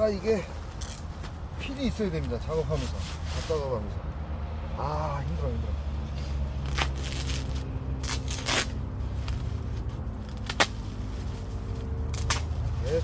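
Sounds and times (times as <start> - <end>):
plastic film scraping and crackling: 6.7 - 9.4.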